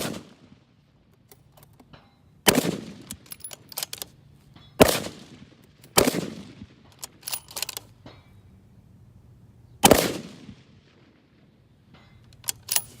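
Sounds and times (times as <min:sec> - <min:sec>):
rifle shots with echo: 0:00.0 - 0:00.8, 0:02.4 - 0:03.3, 0:04.8 - 0:07.4, 0:09.8 - 0:11.5.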